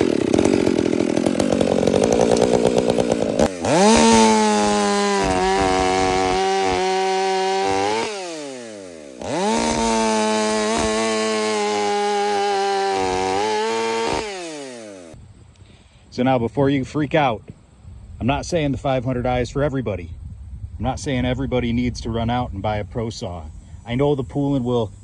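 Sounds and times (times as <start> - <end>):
chainsaw engines at full throttle: 0.0 - 15.2.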